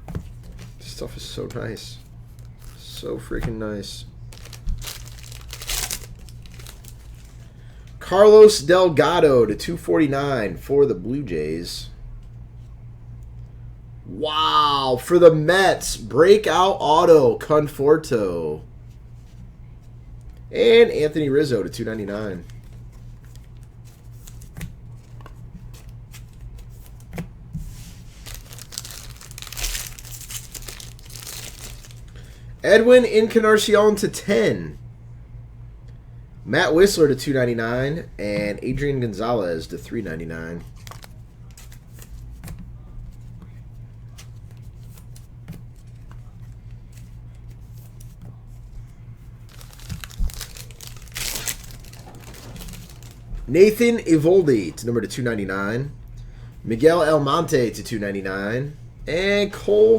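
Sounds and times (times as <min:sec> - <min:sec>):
low electrical hum: 0:00.0 - 0:59.9
packaging clicks: 0:04.3 - 0:07.4, 0:28.2 - 0:32.2, 0:49.5 - 0:53.3
packaging tearing and crinkling: 0:04.3 - 0:07.5, 0:28.1 - 0:32.2, 0:40.7 - 0:42.1, 0:49.5 - 0:53.4.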